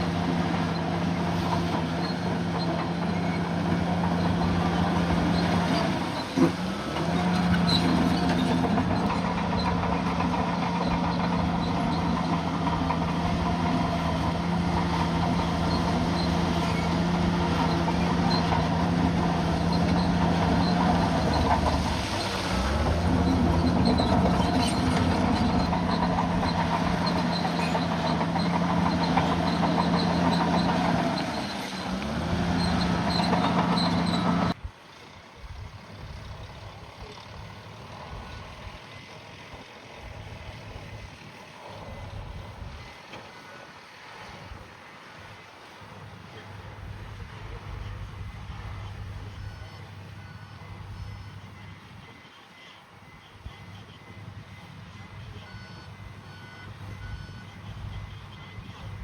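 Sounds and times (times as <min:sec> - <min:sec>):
bulldozer diesel engine running: 0:00.0 - 0:59.0.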